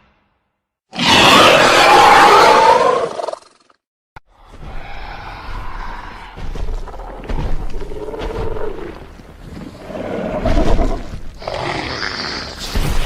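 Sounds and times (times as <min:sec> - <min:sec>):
monster growling and roaring: 0:00.9 - 0:03.6, 0:09.9 - 0:12.8.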